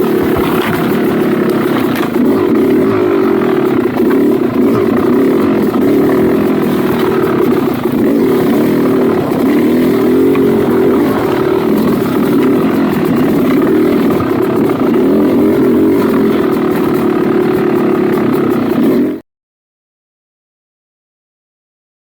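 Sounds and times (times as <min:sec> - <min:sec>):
dirt bike engine revving: 0:00.0 - 0:19.2.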